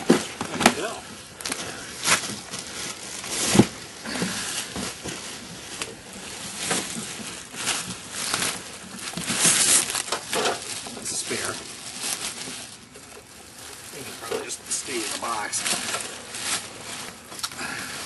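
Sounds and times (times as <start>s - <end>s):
knocks and clunks of gear handling: 0.0s - 2.6s
rustling: 0.0s - 18.0s.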